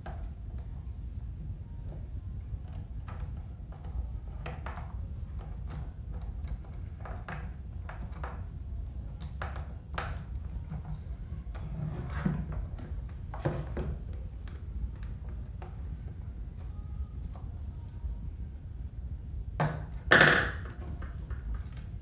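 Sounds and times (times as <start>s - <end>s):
low background rumble: 0.0s - 22.0s
screwdriver clicks and scrapes on fan parts: 21.0s - 21.9s.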